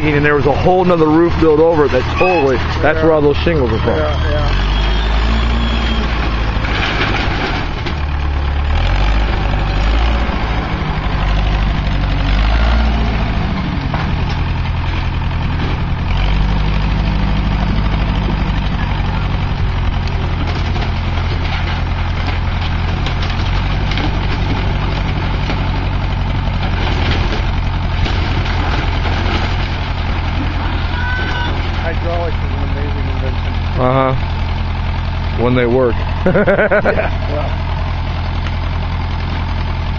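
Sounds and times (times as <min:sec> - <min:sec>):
wood cracking: 0:05.2 - 0:35.4.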